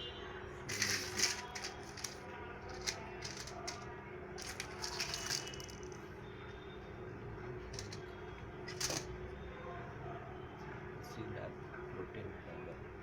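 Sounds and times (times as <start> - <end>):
packaging clicking and crinkling: 0.7 - 3.8, 4.4 - 6.0, 7.8 - 8.0, 8.7 - 9.1.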